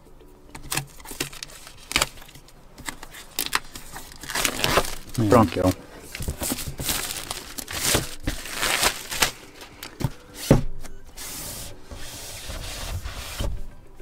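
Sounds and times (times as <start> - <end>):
packaging rustling and tearing: 0.6 - 10.2.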